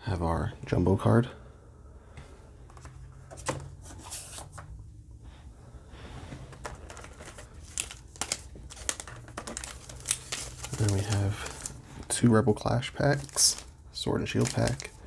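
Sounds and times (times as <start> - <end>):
cards and packaging rustling: 2.6 - 4.8, 6.3 - 15.0.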